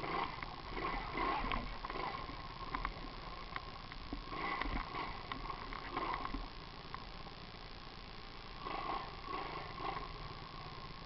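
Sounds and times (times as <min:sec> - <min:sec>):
small engine running faintly: 0:00.0 - 0:06.6, 0:08.6 - 0:10.8.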